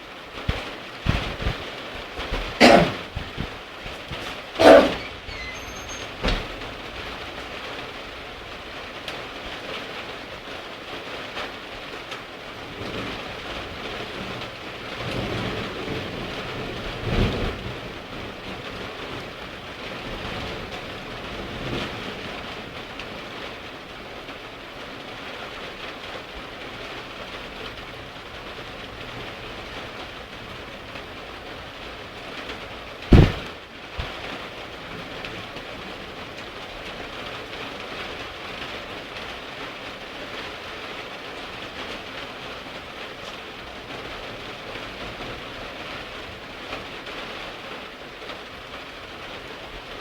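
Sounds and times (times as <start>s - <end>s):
steady rain: 0.0s - 50.0s
thunder rolling: 0.4s - 7.5s, 33.0s - 33.6s.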